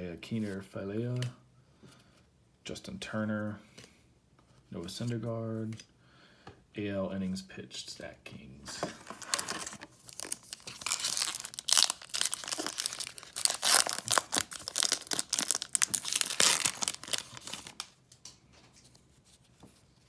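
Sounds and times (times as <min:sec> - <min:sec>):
wrapper tearing and crinkling: 0:08.7 - 0:18.0.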